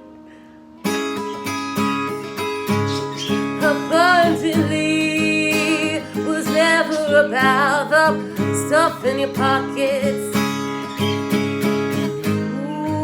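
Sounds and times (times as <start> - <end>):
strummed guitar: 0.0 - 13.0
person singing: 3.6 - 10.4, 12.4 - 13.0.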